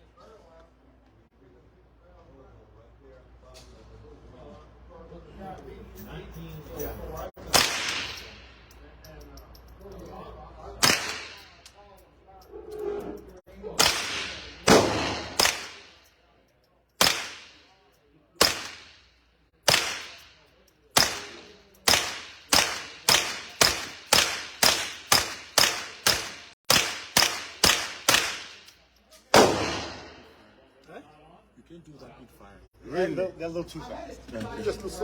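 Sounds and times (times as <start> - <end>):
echoing gunshots: 7.4 - 8.5, 10.8 - 11.6, 13.8 - 16.0, 17.0 - 17.6, 18.4 - 20.4, 21.0 - 28.7, 29.3 - 30.5.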